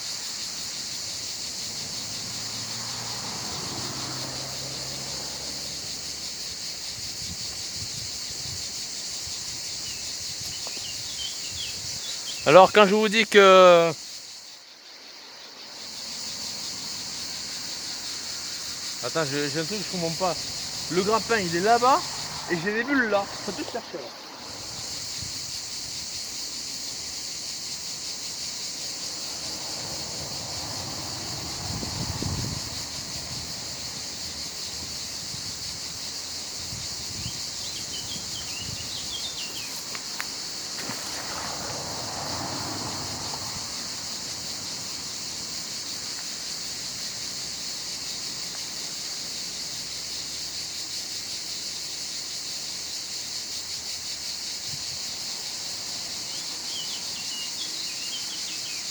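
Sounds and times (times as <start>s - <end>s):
high-pitched insect chorus: 0.0s - 58.9s
bird twitter: 9.8s - 12.5s, 37.2s - 39.7s, 56.3s - 58.8s.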